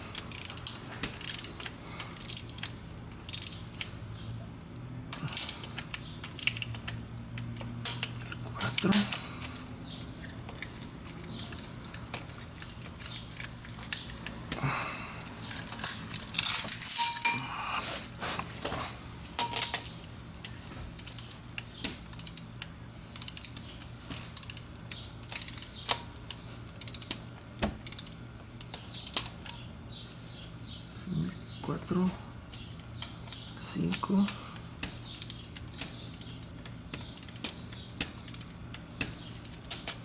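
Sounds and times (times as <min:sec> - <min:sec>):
hand tools clicking and clinking: 0:05.1 - 0:17.8, 0:18.6 - 0:20.2.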